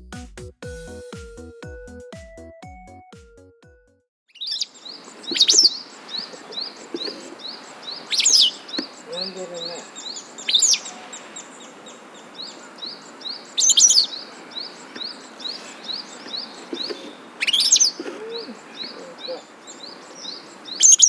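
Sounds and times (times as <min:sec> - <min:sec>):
birds twittering chirps: 0:04.3 - 0:21.0.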